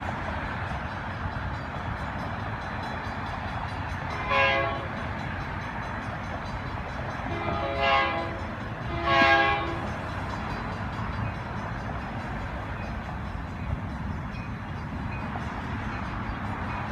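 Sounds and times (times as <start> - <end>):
moving train rumble: 0.0 - 16.9
train horn blasts: 4.1 - 5.0, 7.2 - 10.0.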